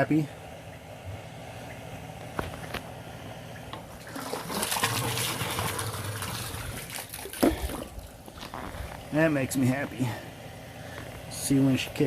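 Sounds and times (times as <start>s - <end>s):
pump motor hum: 0.0s - 12.0s
water gushing from pump: 3.9s - 9.1s.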